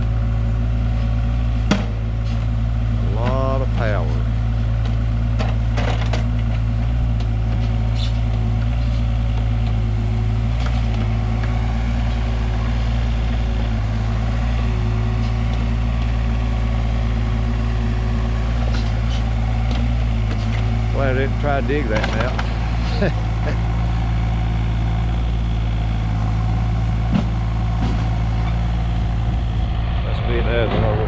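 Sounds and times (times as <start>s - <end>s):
excavator diesel engine running: 0.0s - 31.0s
hydraulic whine: 26.8s - 31.0s.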